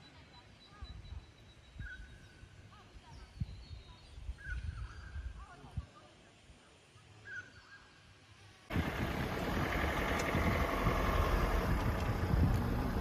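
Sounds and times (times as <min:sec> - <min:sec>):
vehicle engine and road noise: 0:08.7 - 0:13.0.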